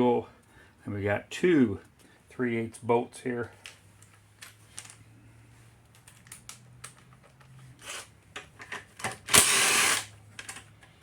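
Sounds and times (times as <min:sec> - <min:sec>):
impact driver running: 0:09.3 - 0:10.1.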